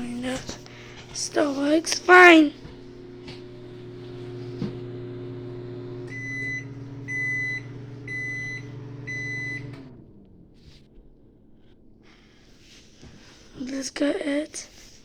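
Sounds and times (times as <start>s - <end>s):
microwave oven humming: 0.0s - 13.3s.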